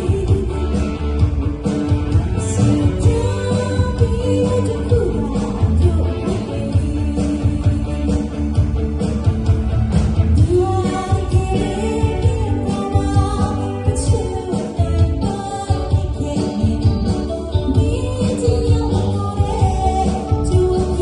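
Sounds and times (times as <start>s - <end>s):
pop-rock band playing: 0.0s - 21.0s
person singing: 2.4s - 8.6s, 10.4s - 21.0s.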